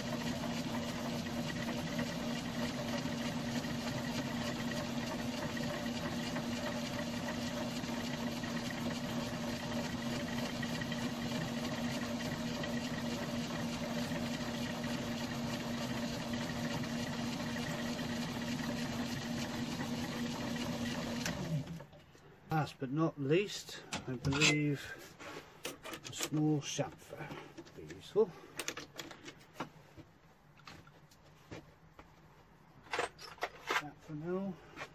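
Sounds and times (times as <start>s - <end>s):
metal lathe running: 0.0s - 21.7s.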